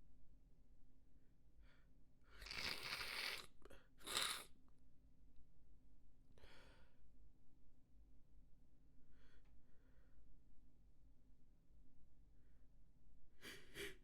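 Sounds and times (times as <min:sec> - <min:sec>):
person sniffing: 0:02.4 - 0:04.5.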